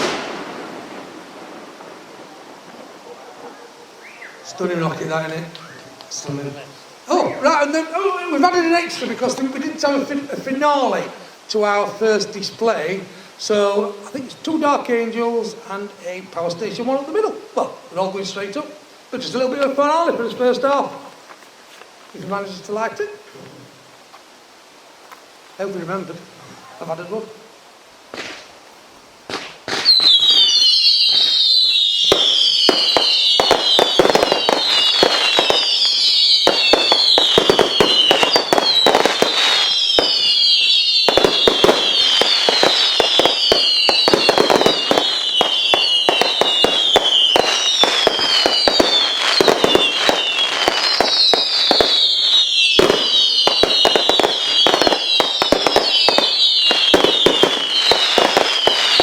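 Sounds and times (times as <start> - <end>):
firework cracks and bangs: 0.0 - 3.5, 7.2 - 12.0, 28.1 - 28.6, 29.2 - 59.0
firework whistles falling in pitch: 4.0 - 4.6, 29.3 - 59.0.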